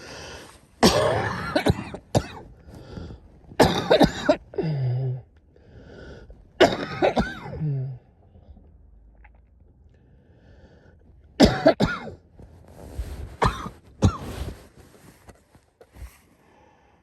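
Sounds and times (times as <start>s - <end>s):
woman coughing: 0.8s - 2.4s, 3.6s - 5.2s, 6.6s - 8.0s, 11.4s - 12.1s, 13.4s - 14.2s.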